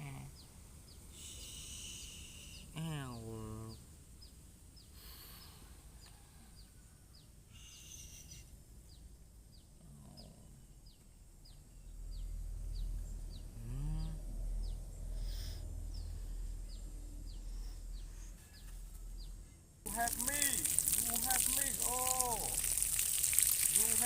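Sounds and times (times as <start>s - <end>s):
bird chirping: 0.1s - 24.0s
low rumble: 11.9s - 18.2s.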